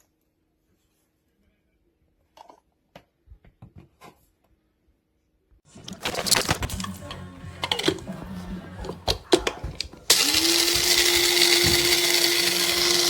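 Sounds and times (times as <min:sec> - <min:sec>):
handling clicks and knocks: 0:05.8 - 0:10.2
coffee grinder motor whirring: 0:05.9 - 0:13.0.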